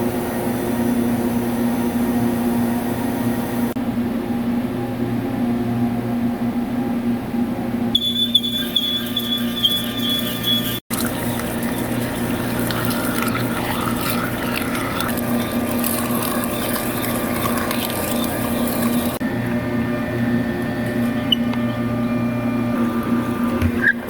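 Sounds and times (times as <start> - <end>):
coolant hiss: 10.9 - 19.2.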